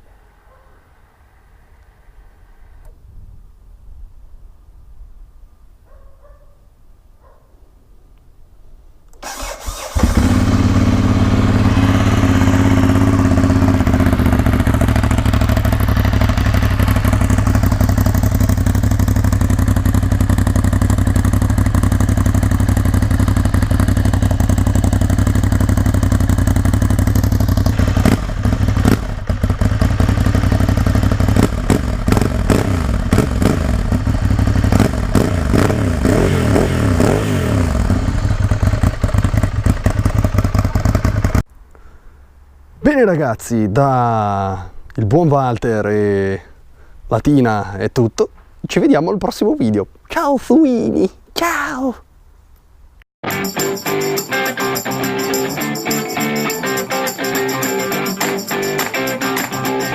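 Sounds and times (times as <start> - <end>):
electric starter cranking: 9.2 - 12.0
motorcycle engine idling: 9.3 - 41.4.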